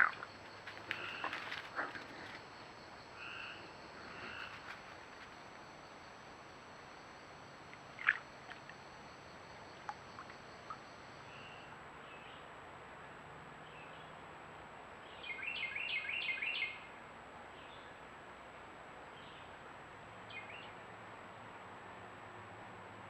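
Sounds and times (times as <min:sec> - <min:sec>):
frogs croaking: 0:00.0 - 0:12.6
steady background hiss: 0:00.0 - 0:23.0
sharp brief frog call: 0:08.0 - 0:08.6.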